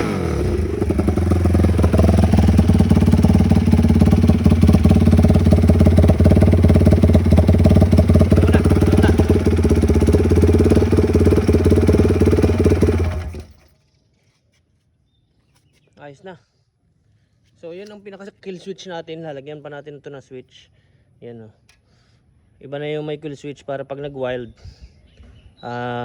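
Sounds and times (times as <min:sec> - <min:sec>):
motorcycle engine idling: 0:00.0 - 0:13.7.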